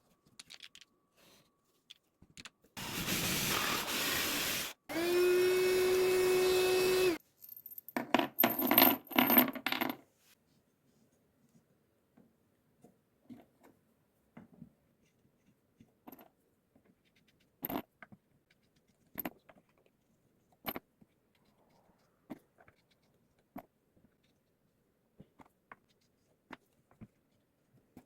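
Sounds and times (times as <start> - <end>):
small hard objects clicking: 0.3 - 0.9.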